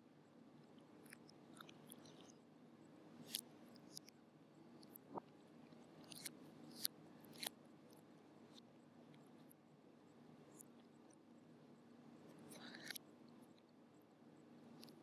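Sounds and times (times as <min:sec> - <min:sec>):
wet mouth clicks of chewing: 0:01.0 - 0:02.3.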